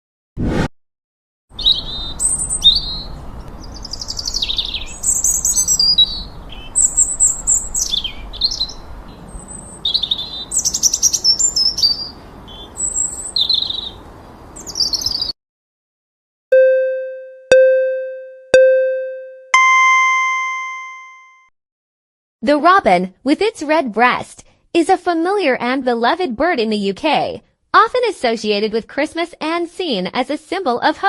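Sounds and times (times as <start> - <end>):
robin singing: 1.6 - 14.0, 14.6 - 15.3.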